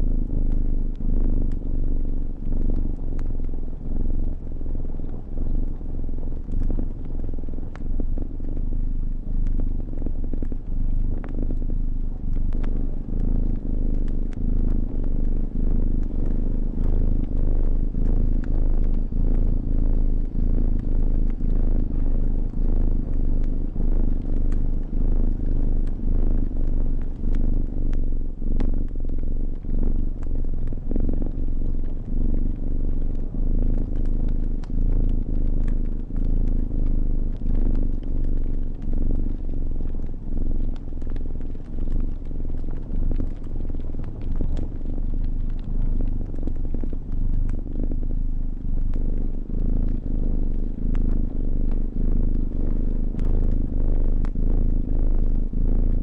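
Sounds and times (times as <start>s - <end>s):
cat purring: 0.0s - 56.0s
fire crackling: 0.0s - 56.0s.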